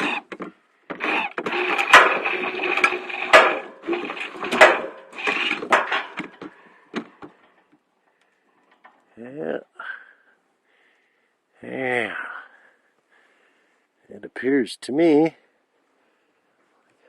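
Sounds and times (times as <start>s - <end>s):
electric winch motor whining: 0.0s - 6.2s.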